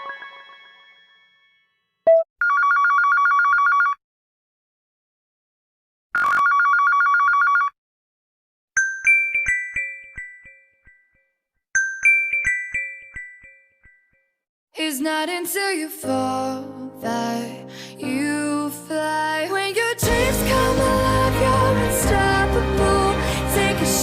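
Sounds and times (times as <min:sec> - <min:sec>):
telephone trilling ring: 0:02.4 - 0:04.0, 0:06.2 - 0:07.8
mallet ringtone melody: 0:08.8 - 0:14.3.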